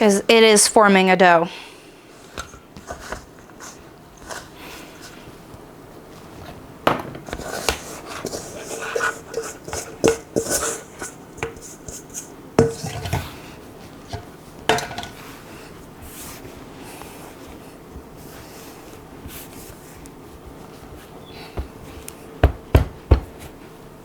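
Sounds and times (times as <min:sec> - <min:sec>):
utensil scraping mixing bowl: 0:02.2 - 0:05.3, 0:07.2 - 0:15.2.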